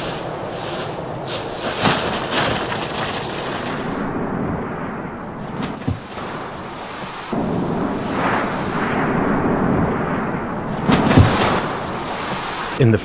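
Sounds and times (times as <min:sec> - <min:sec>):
strong wind gusts: 0:00.0 - 0:12.8
low thump: 0:05.3 - 0:12.8.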